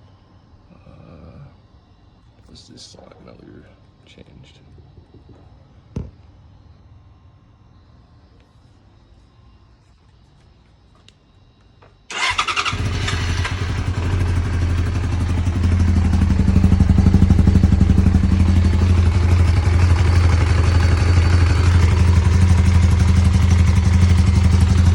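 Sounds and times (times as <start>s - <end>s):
fast even engine ticking: 12.1s - 24.9s
vehicle engine starting and running: 12.1s - 24.9s.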